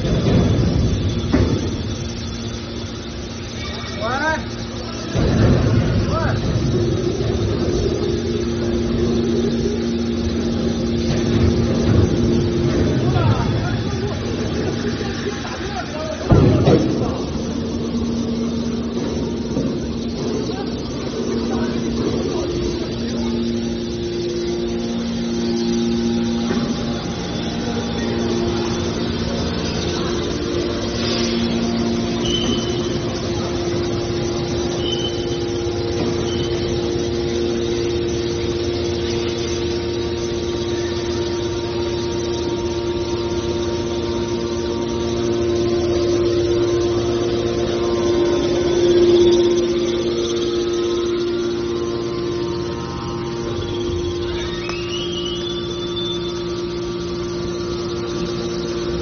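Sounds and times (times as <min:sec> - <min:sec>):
baler machine hum: 0:00.0 - 0:59.0
short high squeaks: 0:31.0 - 0:32.9.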